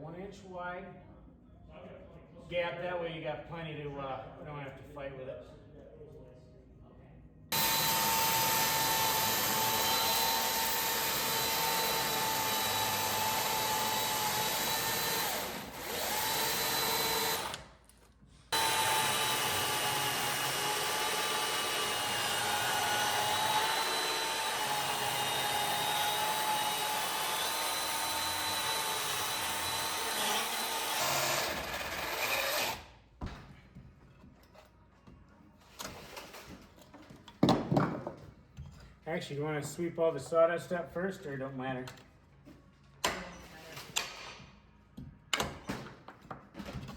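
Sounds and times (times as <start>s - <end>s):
electric drill boring into wood: 7.5s - 17.6s, 18.6s - 32.9s.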